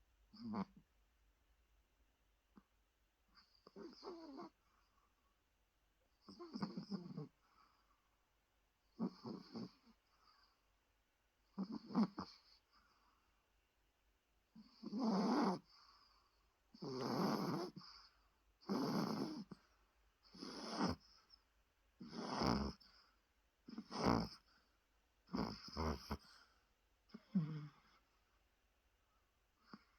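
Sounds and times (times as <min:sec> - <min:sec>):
small dog snoring: 0:00.3 - 0:00.9, 0:03.3 - 0:05.1, 0:06.1 - 0:07.9, 0:08.8 - 0:10.7, 0:11.4 - 0:13.2, 0:14.5 - 0:28.2, 0:29.6 - 0:29.9.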